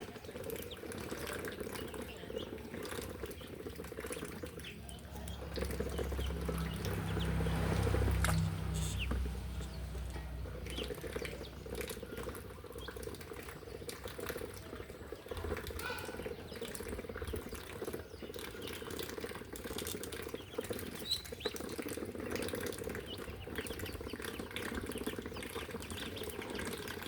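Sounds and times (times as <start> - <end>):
ducklings peeping: 0.0 - 27.0
running water: 0.0 - 27.0
low rumble: 4.9 - 11.7.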